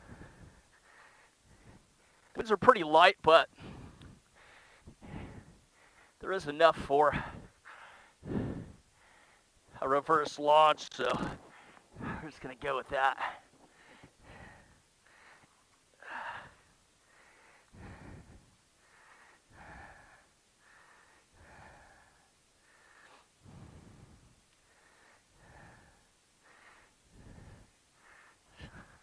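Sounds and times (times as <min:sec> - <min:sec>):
person breathing: 0:00.0 - 0:02.4, 0:03.5 - 0:06.2, 0:07.0 - 0:09.8, 0:11.0 - 0:12.4, 0:13.1 - 0:29.0.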